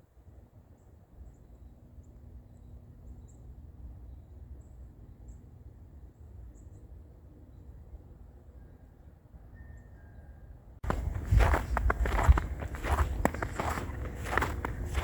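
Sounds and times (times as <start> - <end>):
steady low rumble: 10.8 - 15.0.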